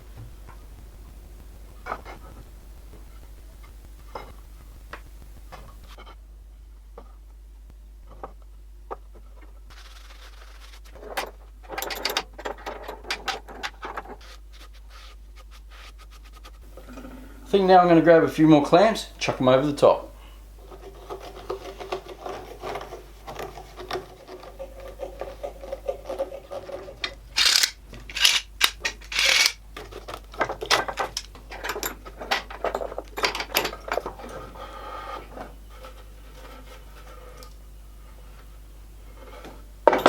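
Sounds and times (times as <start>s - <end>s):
clamps clattering against wood: 11.2s - 14.1s, 27.0s - 34.0s.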